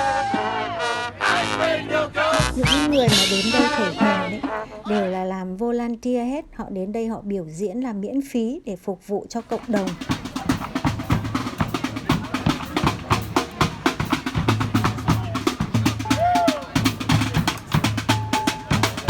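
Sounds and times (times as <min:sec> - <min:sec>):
held horn note: 0:00.0 - 0:05.1
fast snare and bass drumming: 0:02.4 - 0:04.6, 0:09.4 - 0:19.0.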